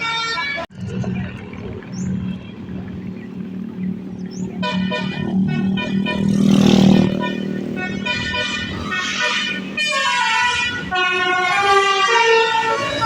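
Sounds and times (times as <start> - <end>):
bus engine hum: 0.0 - 13.0
musical air horn: 4.6 - 13.0.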